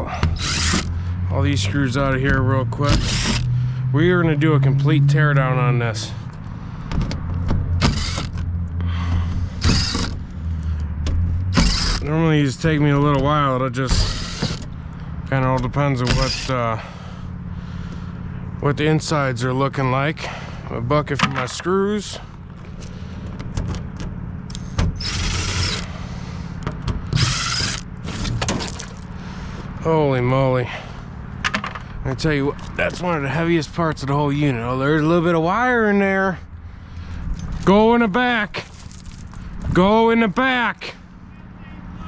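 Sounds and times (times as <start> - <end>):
power driver removing screws: 0.0 - 1.2, 2.0 - 3.6, 6.9 - 8.5, 9.1 - 12.1, 13.0 - 14.7, 15.6 - 16.6, 23.4 - 26.0, 26.7 - 29.1
steady low hum: 0.0 - 35.4.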